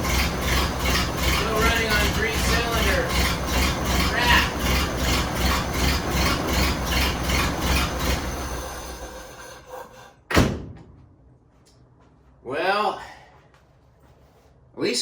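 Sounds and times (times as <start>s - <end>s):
uneven car engine running: 0.0s - 9.4s.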